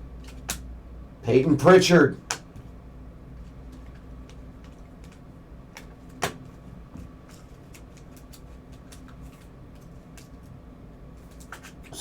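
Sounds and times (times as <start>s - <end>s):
faint steady hum: 0.0s - 12.0s
trading cards flipping: 0.2s - 0.6s, 3.4s - 10.5s, 11.2s - 11.9s.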